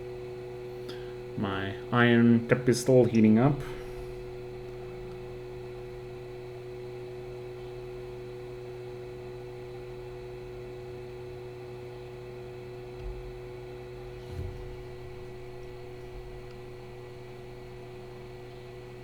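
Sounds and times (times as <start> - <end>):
electrical hum: 0.0 - 19.0
soft knocks: 13.0 - 19.0.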